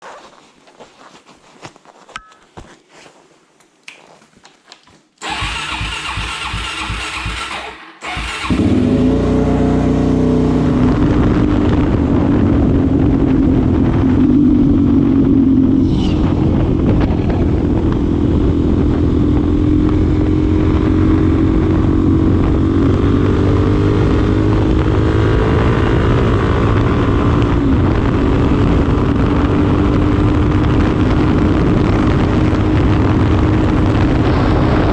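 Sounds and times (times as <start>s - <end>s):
motorcycle engine cranking and idling: 5.2s - 9.4s.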